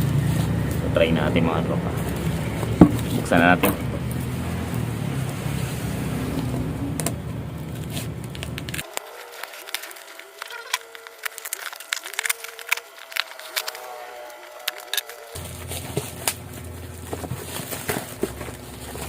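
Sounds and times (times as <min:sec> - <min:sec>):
steady low hum: 0:00.0 - 0:19.0
cardboard box being opened: 0:07.8 - 0:19.0.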